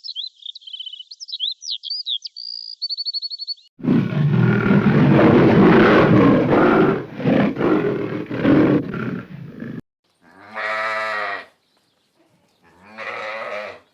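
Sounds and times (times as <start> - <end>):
big cat growling roar: 3.8 - 9.8
sheep bleating: 10.2 - 11.6, 12.6 - 13.9.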